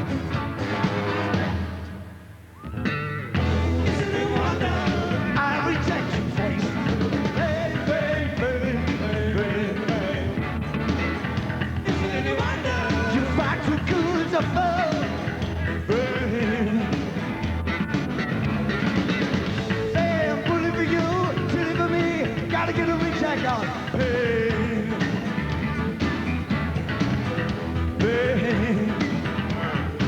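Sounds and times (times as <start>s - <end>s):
rock song with singing: 0.0s - 30.0s.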